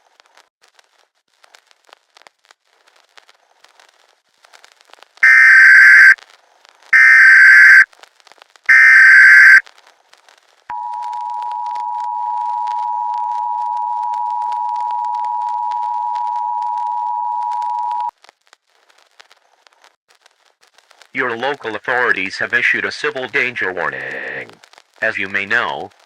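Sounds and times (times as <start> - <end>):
faint crackling static: 0.0 - 26.0
data header screech: 5.2 - 6.2, 7.0 - 7.8, 8.7 - 9.6, 21.8 - 25.4
two-tone attention signal: 5.2 - 6.2, 7.0 - 7.8, 8.7 - 9.6.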